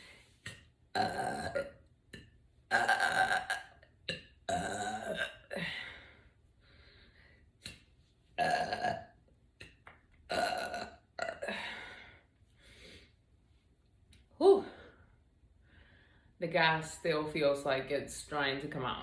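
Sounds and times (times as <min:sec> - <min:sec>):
woman belching: 0:01.0 - 0:01.8, 0:02.7 - 0:05.8, 0:08.4 - 0:09.1, 0:10.3 - 0:11.7.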